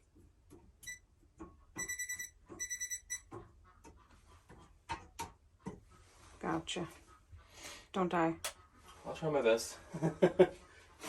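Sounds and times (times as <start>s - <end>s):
voltage tester beeping: 1.8s - 3.3s.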